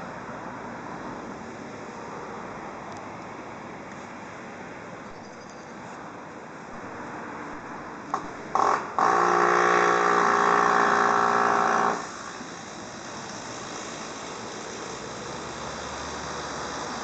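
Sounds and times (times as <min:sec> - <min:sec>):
train horn chord: 0:08.6 - 0:12.0.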